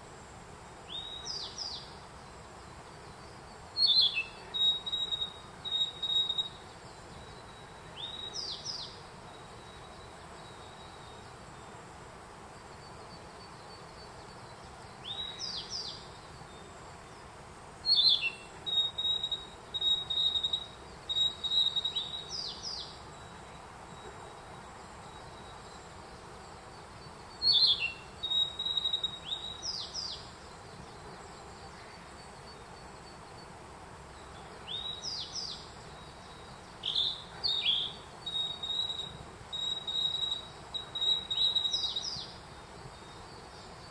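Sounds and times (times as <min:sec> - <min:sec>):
flycatcher singing: 0:00.8 - 0:11.8, 0:12.7 - 0:33.5, 0:34.1 - 0:43.9
bunting whistled song: 0:03.8 - 0:11.3, 0:17.8 - 0:26.1, 0:27.0 - 0:30.6, 0:34.2 - 0:43.4.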